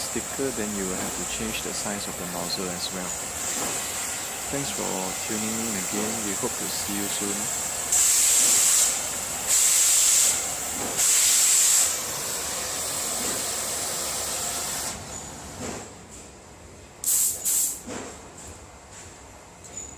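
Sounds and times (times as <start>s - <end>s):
gas torch hissing: 0.0s - 15.2s, 17.0s - 17.9s
short gas bursts: 3.0s - 15.0s, 17.0s - 17.9s.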